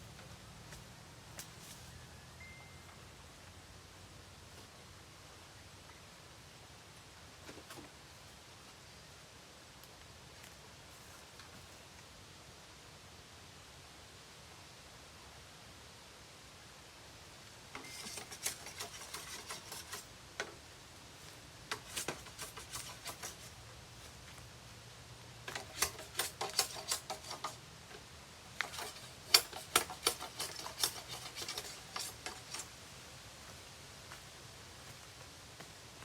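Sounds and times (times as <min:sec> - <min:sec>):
scraping and clicking: 0:17.8 - 0:20.6, 0:21.7 - 0:23.6, 0:25.5 - 0:28.0, 0:28.6 - 0:32.7.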